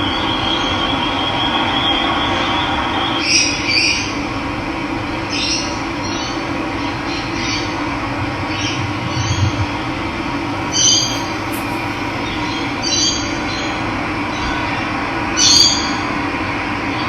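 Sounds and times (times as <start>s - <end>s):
running water rushing: 10.6s - 12.9s
birds calling: 10.6s - 13.2s.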